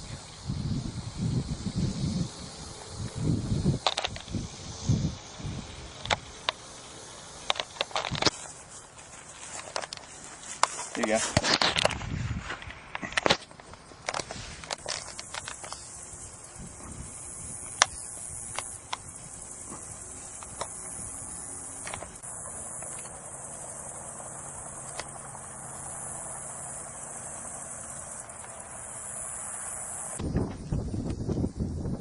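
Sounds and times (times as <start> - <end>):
insects chirring: 0.0 - 32.0
sharp clicks and knocks: 9.6 - 15.9.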